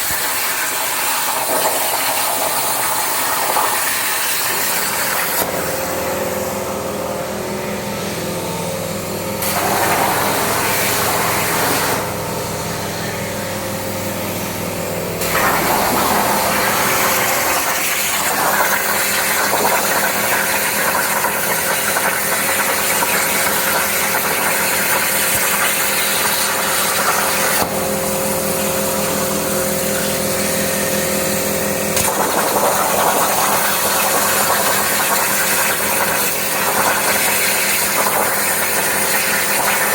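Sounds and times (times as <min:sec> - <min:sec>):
plasma torch hiss: 0:00.1 - 0:05.8, 0:09.4 - 0:12.1, 0:15.2 - 0:27.7
machine hum: 0:05.4 - 0:19.8.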